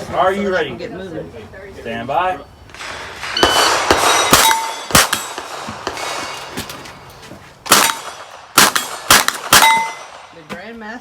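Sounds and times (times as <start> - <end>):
gunshots: 2.8 - 6.9, 7.6 - 10.4
steel plates ringing: 3.4 - 5.4, 9.6 - 10.1.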